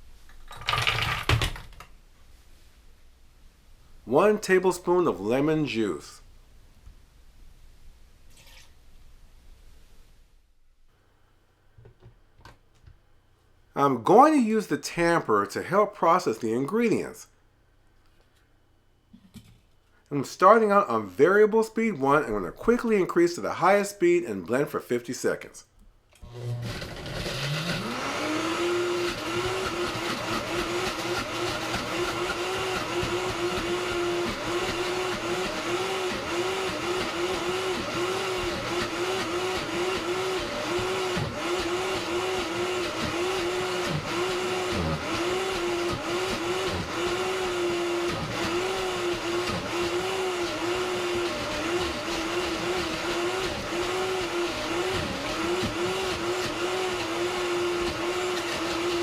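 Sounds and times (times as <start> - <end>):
blender motor running hard: 26.2 - 59.0.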